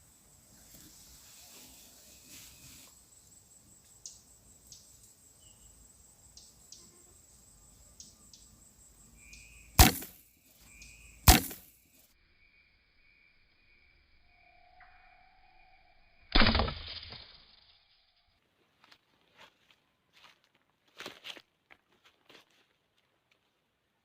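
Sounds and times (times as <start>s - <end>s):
faint ticks and hiss: 0.0s - 9.6s
loud sharp cracks: 9.8s - 10.2s, 11.3s - 11.7s.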